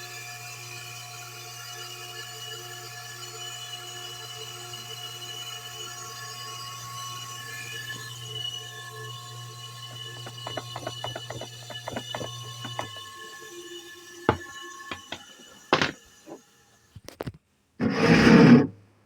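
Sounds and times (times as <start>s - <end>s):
pump motor humming and rattling: 0.0s - 16.4s.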